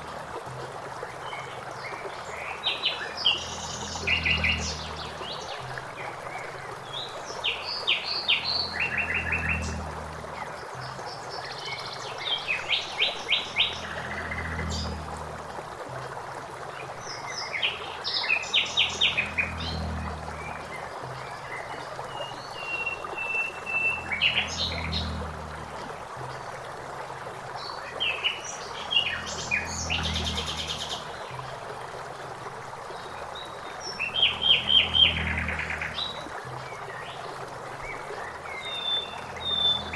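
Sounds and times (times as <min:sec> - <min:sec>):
songbirds singing and trilling: 0:00.0 - 0:32.0, 0:32.7 - 0:39.9
flowing water rushing: 0:00.0 - 0:39.9.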